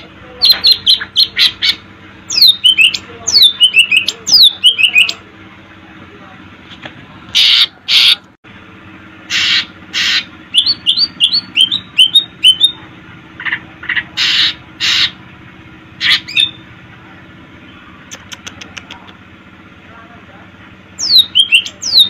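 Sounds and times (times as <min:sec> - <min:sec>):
bird harsh rasping calls: 0:00.4 - 0:05.2, 0:07.3 - 0:08.3, 0:09.2 - 0:12.8, 0:13.4 - 0:15.3, 0:16.0 - 0:16.7, 0:21.0 - 0:22.0
bird rising chirps: 0:09.3 - 0:12.8, 0:21.0 - 0:22.0.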